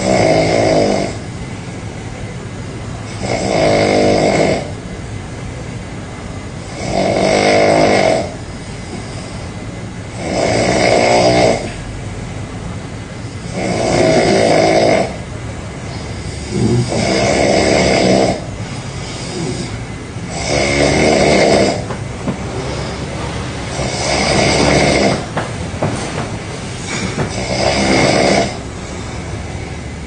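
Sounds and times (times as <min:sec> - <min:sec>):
person snoring loudly: 0:00.0 - 0:01.3, 0:03.1 - 0:04.8, 0:06.6 - 0:09.5, 0:10.1 - 0:11.8, 0:13.2 - 0:15.3, 0:15.9 - 0:25.4, 0:26.8 - 0:29.2.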